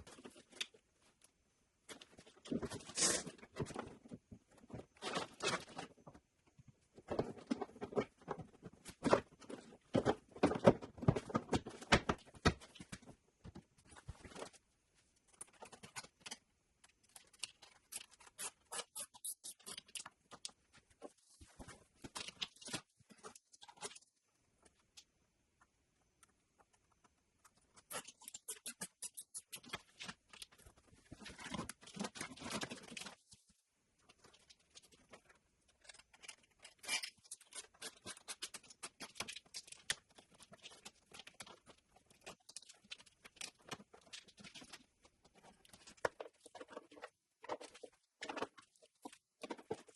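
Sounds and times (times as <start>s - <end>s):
wires and plastic parts clicking: 0.0s - 6.2s, 15.2s - 21.2s, 22.0s - 33.4s, 34.0s - 49.9s.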